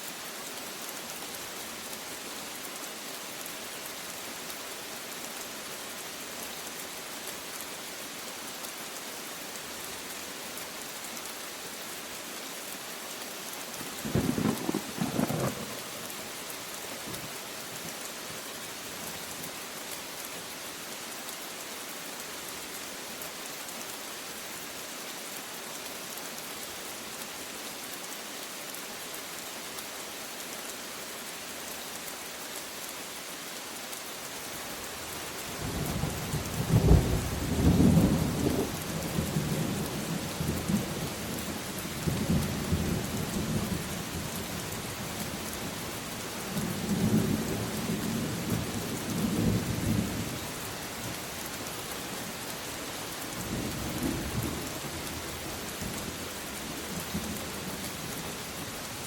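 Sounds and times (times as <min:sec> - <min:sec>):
steady rain: 0:00.0 - 0:59.0
thunder rolling: 0:14.1 - 0:15.8.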